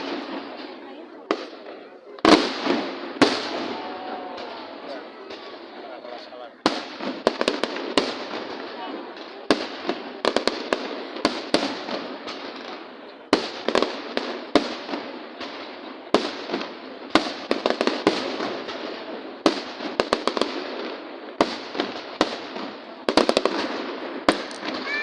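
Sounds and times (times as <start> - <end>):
crackling firework tails: 0.0 - 25.0
firework shells bursting: 21.4 - 25.0.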